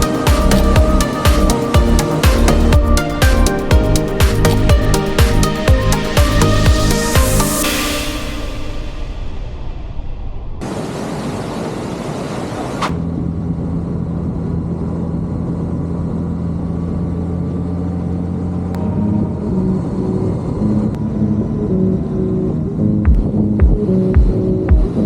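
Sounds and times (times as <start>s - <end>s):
motorcycle engine running: 0.0s - 7.6s
shifting tones: 0.0s - 10.8s
rushing noise: 0.0s - 13.0s.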